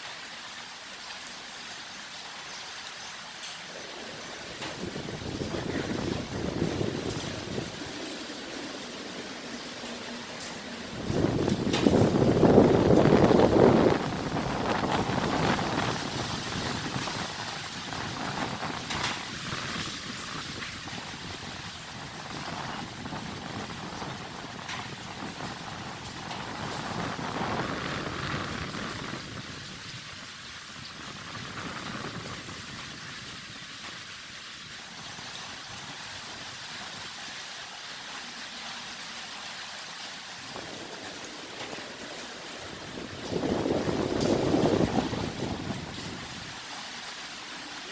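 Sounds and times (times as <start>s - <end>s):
strong wind rushing: 3.7s - 33.8s, 40.3s - 46.6s.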